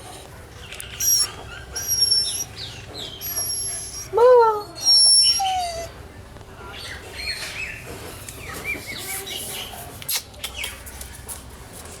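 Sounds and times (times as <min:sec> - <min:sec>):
puppy whimpering: 0:01.0 - 0:02.5, 0:03.2 - 0:05.9.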